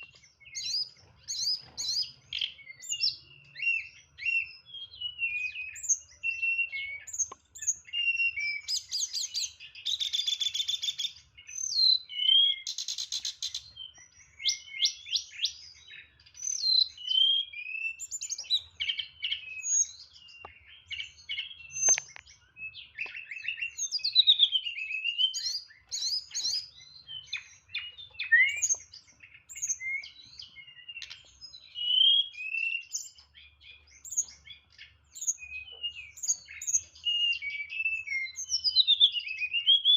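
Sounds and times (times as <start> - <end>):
songbird singing: 0.0 - 39.9.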